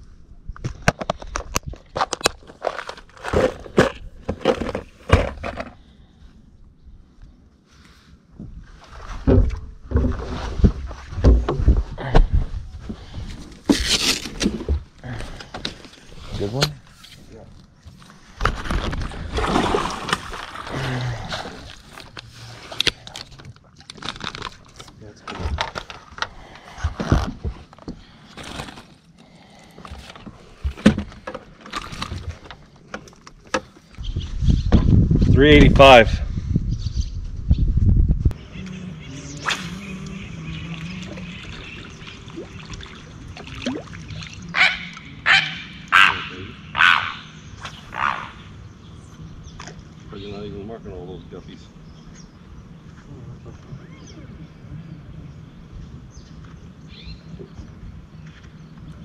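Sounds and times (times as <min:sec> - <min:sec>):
water lapping at boat hull: 0:40.4 - 0:45.2.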